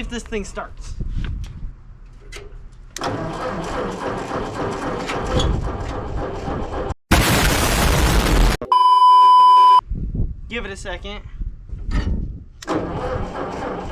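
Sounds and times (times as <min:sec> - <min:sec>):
tractor engine cranking and idling: 0:02.0 - 0:07.0, 0:12.6 - 0:13.9.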